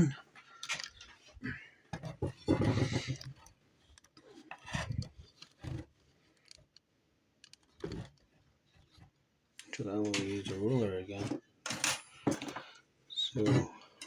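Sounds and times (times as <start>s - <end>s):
tools clattering on a workbench: 9.6s - 14.0s.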